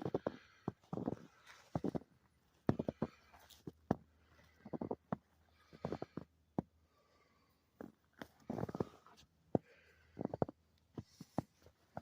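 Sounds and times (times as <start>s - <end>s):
footsteps crunching in snow: 0.1s - 2.1s.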